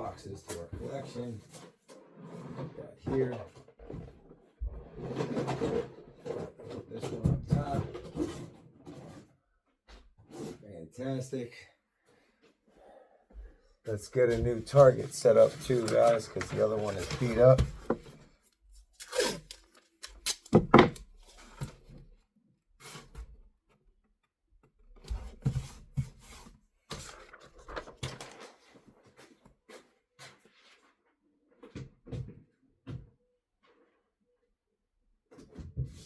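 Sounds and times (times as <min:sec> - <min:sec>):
rubbing and rustling: 0:14.2 - 0:21.9
handling knocks and clicks: 0:19.5 - 0:21.2.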